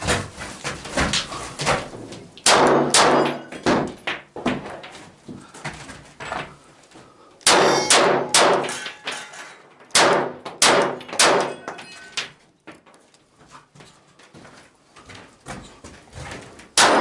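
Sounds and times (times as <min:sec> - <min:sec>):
steel targets clanging: 0:02.9 - 0:03.7, 0:07.4 - 0:10.0, 0:10.6 - 0:12.3
rifle shots: 0:07.4 - 0:08.6, 0:10.0 - 0:11.5, 0:16.8 - 0:17.0.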